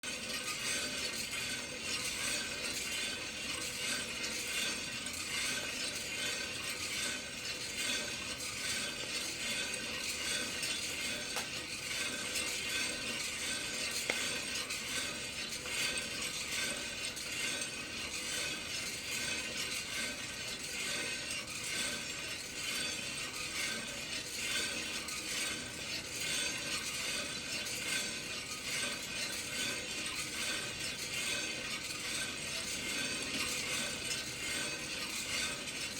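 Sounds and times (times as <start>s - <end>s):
roaster hiss and hum: 0.1s - 35.9s
coffee beans tumbling in drum: 8.4s - 17.2s.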